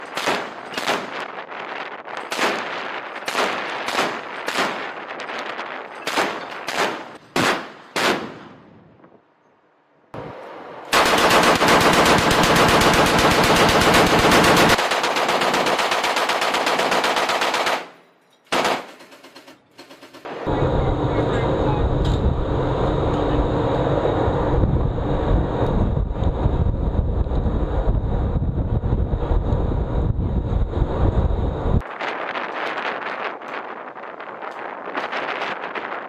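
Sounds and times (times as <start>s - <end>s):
heavy machine guns firing: 10.9s - 20.4s.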